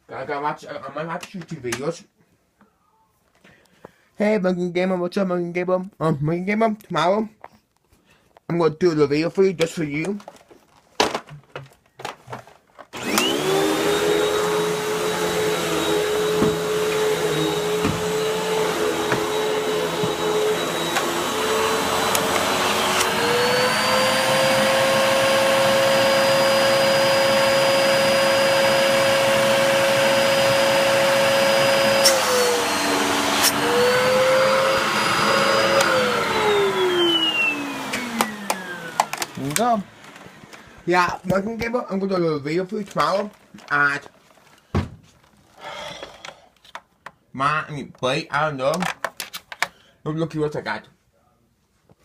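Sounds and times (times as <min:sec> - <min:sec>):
vacuum cleaner motor whining: 0:12.4 - 0:41.6
vacuum cleaner switch clicks: 0:35.7 - 0:36.0, 0:37.8 - 0:39.7.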